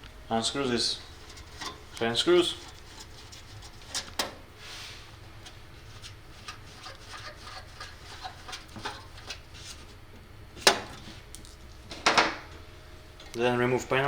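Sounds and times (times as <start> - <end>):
thumbscrew ticks and metal scrapes: 1.0 - 4.3, 5.4 - 9.9.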